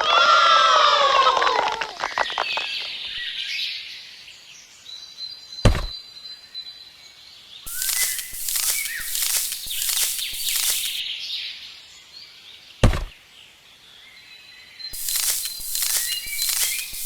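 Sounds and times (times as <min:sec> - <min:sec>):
sharp knock: 0:05.7 - 0:06.0, 0:12.8 - 0:13.2
scraping strokes: 0:07.7 - 0:11.0, 0:15.0 - 0:17.0.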